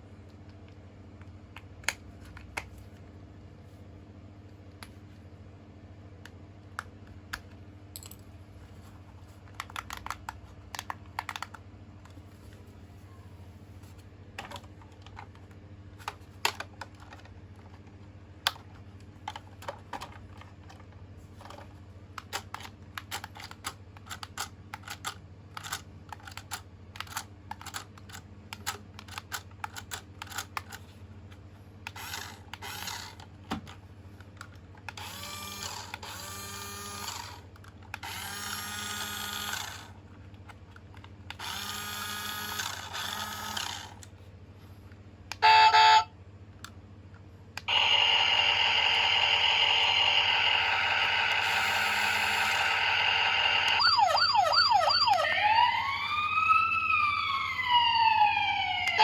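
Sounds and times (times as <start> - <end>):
toy electronic sound effects: 45.4 - 46.1, 47.7 - 59.0.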